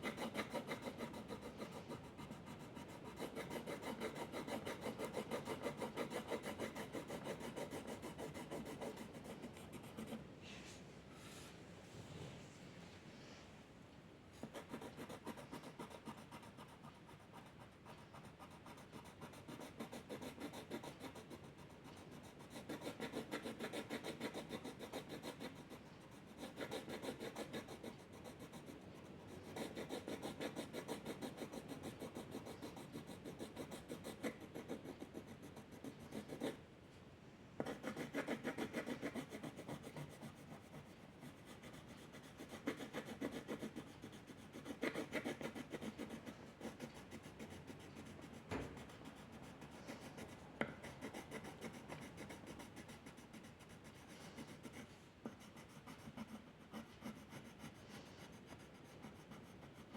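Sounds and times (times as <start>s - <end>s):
pencil scratching on paper: 0.0s - 10.2s, 14.4s - 36.6s, 37.6s - 59.9s.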